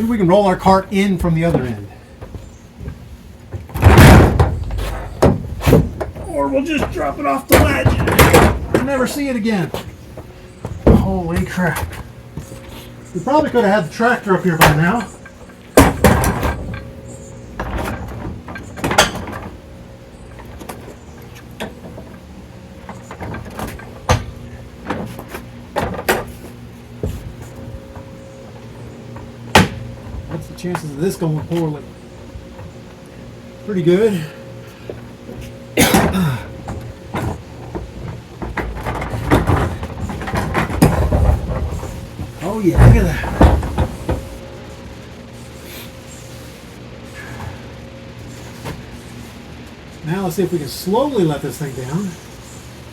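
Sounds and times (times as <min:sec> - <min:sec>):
steady low hum: 0:00.0 - 0:52.9
metal clunks and scraping: 0:00.6 - 0:13.7, 0:14.6 - 0:19.6, 0:20.3 - 0:31.9, 0:34.2 - 0:44.5
metal equipment clunking: 0:14.6 - 0:19.6, 0:35.2 - 0:44.4
sharp knocks: 0:29.5 - 0:30.3
creaks: 0:34.0 - 0:44.5.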